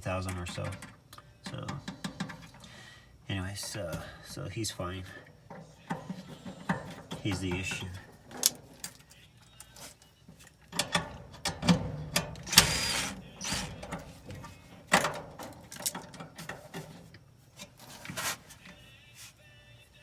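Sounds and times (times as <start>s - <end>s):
clicks and knocks in dryer: 10.8s - 12.7s, 13.6s - 17.0s
scraping rustle: 16.4s - 19.4s.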